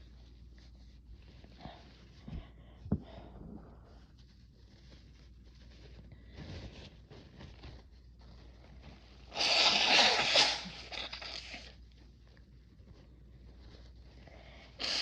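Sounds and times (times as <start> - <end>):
person blowing nose: 9.2 - 11.8, 14.6 - 15.0.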